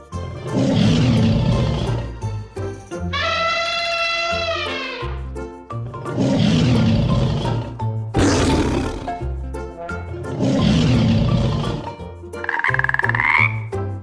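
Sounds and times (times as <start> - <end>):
animal roars: 0.4 - 2.2, 6.0 - 9.2, 10.3 - 11.9.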